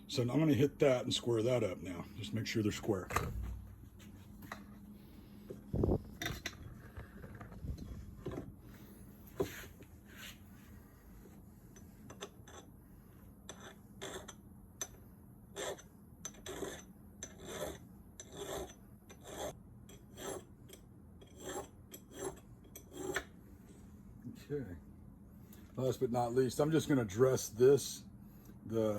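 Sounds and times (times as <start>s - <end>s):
hand file rasping on steel: 13.5s - 14.4s, 15.6s - 20.5s, 21.2s - 23.3s.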